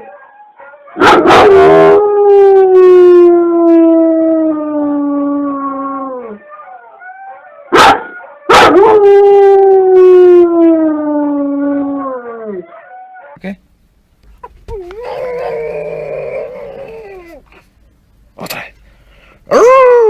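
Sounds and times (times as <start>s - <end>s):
dog howling: 0.0s - 13.4s, 14.7s - 17.6s
dog yelping: 14.4s - 17.6s
dog whining: 14.4s - 17.7s.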